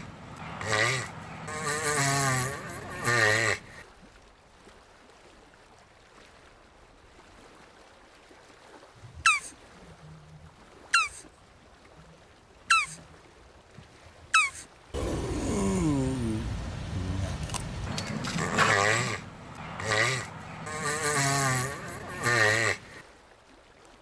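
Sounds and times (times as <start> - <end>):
tortoise harsh groan: 0.0 - 3.8, 14.4 - 23.0
tortoise high calls: 0.0 - 3.8, 9.2 - 9.6, 10.9 - 11.3, 12.7 - 13.0, 14.3 - 23.0.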